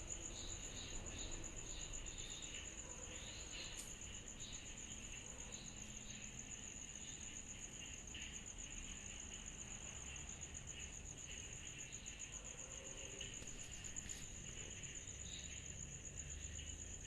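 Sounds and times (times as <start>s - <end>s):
cicadas trilling: 0.0s - 17.0s.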